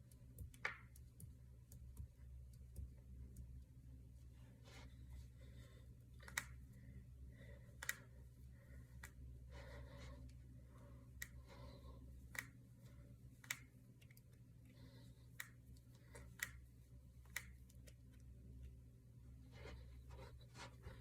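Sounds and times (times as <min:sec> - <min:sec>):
faint steady hum: 0:00.0 - 0:21.0
knuckles cracking: 0:06.2 - 0:06.6, 0:07.7 - 0:08.2, 0:12.3 - 0:12.6, 0:13.4 - 0:14.5, 0:15.3 - 0:18.2.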